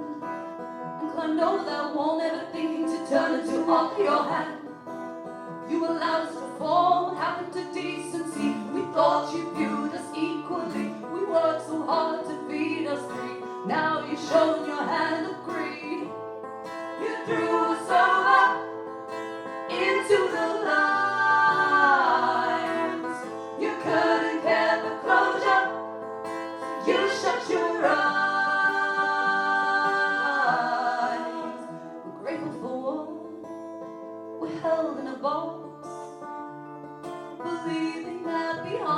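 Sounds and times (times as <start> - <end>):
plucked acoustic guitar: 0.0 - 38.9
person singing: 5.7 - 16.1, 17.0 - 18.6, 19.7 - 25.7, 26.6 - 33.5.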